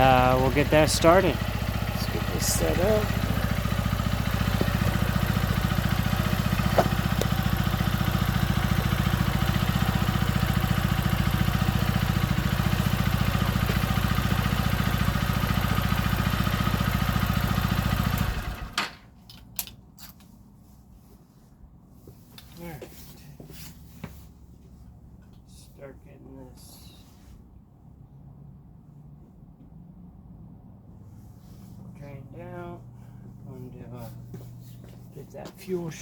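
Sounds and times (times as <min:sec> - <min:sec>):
motorcycle engine idling: 0:00.0 - 0:18.8.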